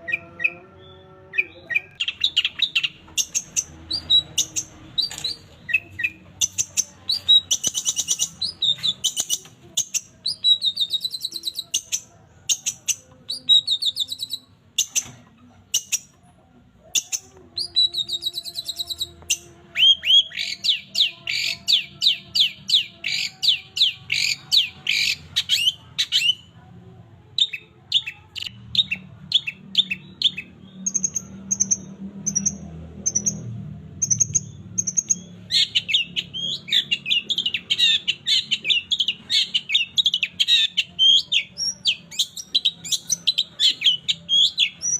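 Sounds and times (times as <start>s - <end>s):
shrike singing chirps and trills: 0.0s - 16.2s, 16.9s - 26.6s, 27.4s - 44.9s.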